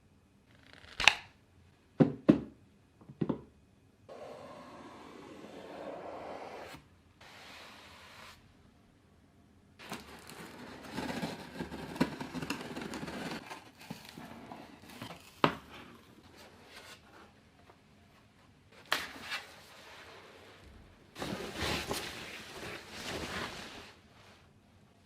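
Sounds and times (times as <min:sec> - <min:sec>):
packaging crinkling and rustling: 0:09.8 - 0:15.4.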